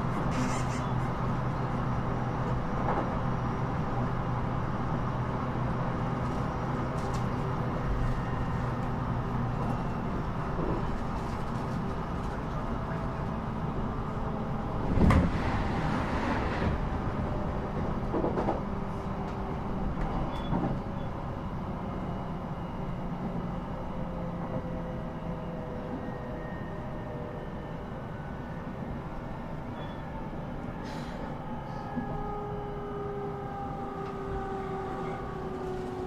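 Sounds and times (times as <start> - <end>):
train clunks and knocks: 0.0 - 4.5, 5.2 - 21.9, 33.6 - 36.0
train wheels rumbling on rails: 0.0 - 36.0.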